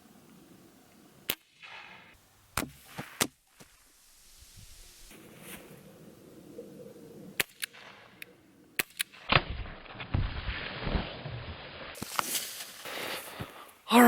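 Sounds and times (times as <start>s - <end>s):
pellet gun shots: 1.3s - 3.4s, 7.4s - 8.0s, 8.8s - 9.7s.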